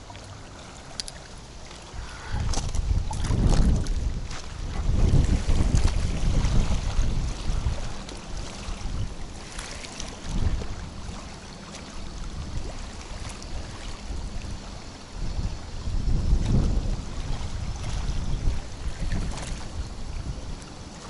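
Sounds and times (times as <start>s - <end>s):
faint light ticks: 0.9s - 1.3s
wind buffeting microphone: 1.8s - 21.0s.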